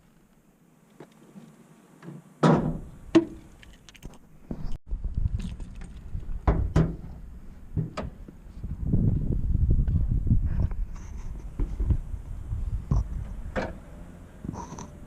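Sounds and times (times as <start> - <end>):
low rumbling handling noise: 2.4 - 15.0.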